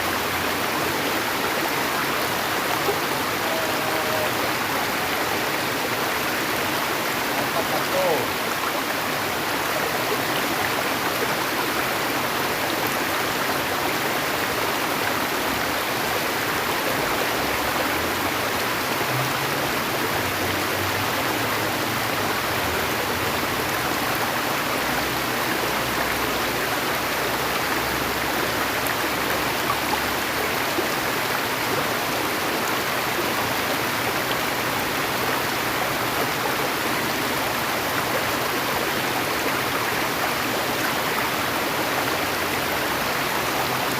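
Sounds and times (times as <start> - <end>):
stream water rushing: 0.0 - 43.9.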